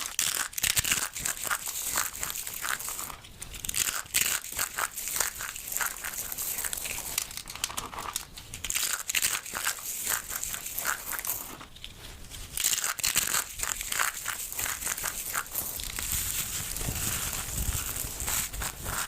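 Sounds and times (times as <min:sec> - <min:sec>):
soap crunching and crackling: 0:00.0 - 0:19.0.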